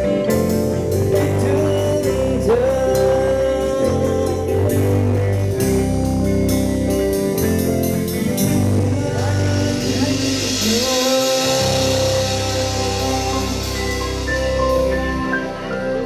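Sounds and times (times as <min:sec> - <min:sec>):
live band playing: 0:00.0 - 0:16.0
cymbal wash: 0:06.6 - 0:16.0
sharp drum strikes: 0:08.4 - 0:15.3.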